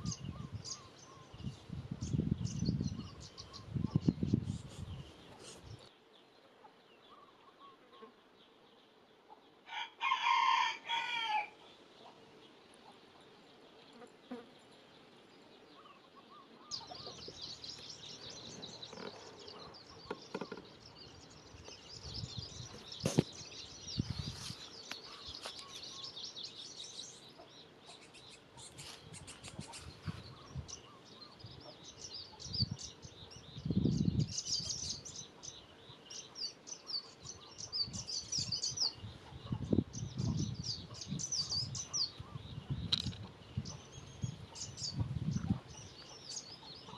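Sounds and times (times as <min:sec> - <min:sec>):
small birds chirping: 0:00.0 - 0:09.8, 0:10.9 - 0:46.9
rooster crowing: 0:09.7 - 0:11.6.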